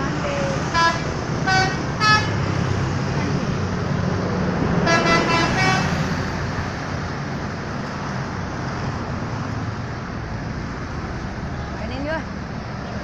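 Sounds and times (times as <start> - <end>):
road traffic and engine rumble: 0.0 - 13.0
multi-tone bus horn: 0.4 - 2.6, 4.8 - 6.2.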